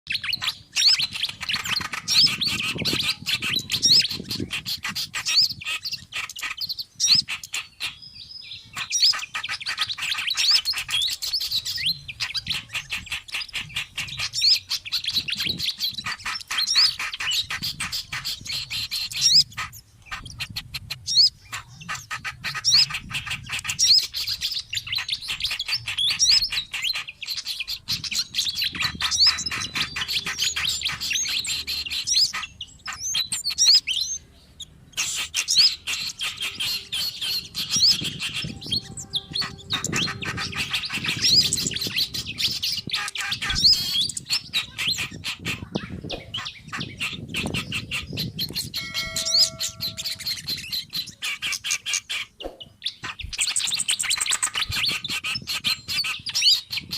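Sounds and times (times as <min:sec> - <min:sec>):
songbirds chirping and whistling: 0:00.0 - 0:56.9.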